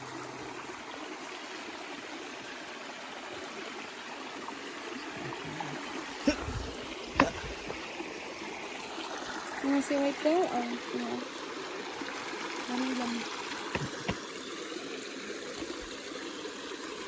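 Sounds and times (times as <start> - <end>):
stream running: 0.0 - 17.0
short sharp knocks: 13.8 - 14.2.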